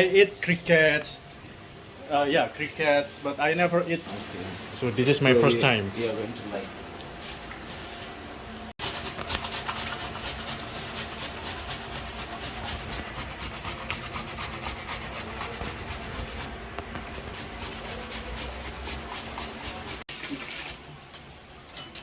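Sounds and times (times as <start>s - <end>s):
tomatoes rasping on hand grater: 8.8s - 16.5s, 17.1s - 20.0s.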